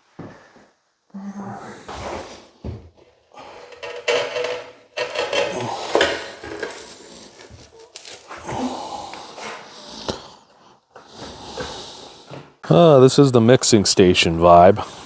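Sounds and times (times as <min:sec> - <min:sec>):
hand tools scraping and clinking: 0:03.4 - 0:08.5.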